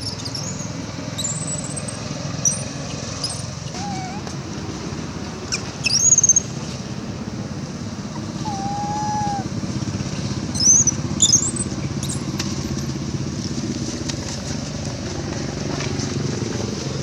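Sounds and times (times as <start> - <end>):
low engine-like rumble: 0.0 - 17.0
monkey squealing: 2.5 - 4.3, 5.5 - 6.4, 8.2 - 9.5, 10.6 - 12.2.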